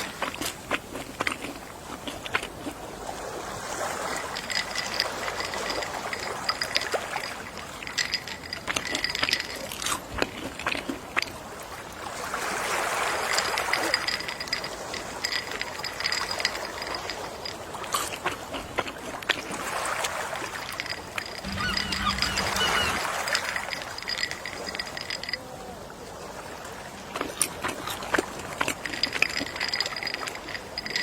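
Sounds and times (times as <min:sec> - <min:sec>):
sea waves washing ashore: 0:02.6 - 0:18.4, 0:19.4 - 0:31.0
faint high ticking: 0:20.9 - 0:25.2.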